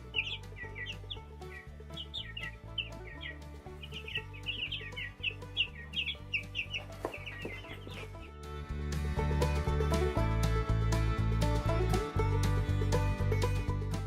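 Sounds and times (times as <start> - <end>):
chicks peeping: 0.0 - 8.3
background music: 0.0 - 14.0.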